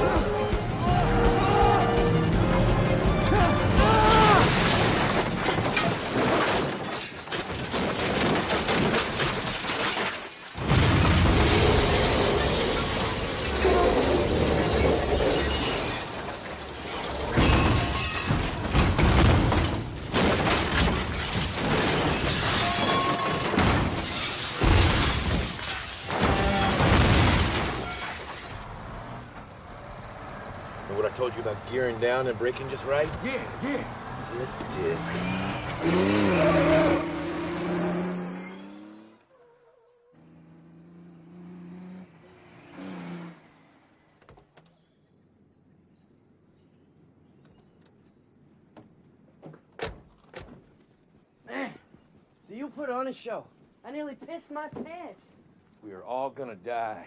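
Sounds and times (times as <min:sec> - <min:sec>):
dramatic score music: 0:00.0 - 0:04.1
loud crashes and shattering: 0:03.6 - 0:28.7
booms: 0:10.6 - 0:13.6.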